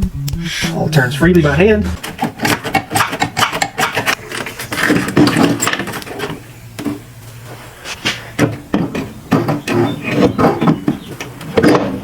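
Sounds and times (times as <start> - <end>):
hand tools clicking and knocking: 2.0 - 6.4.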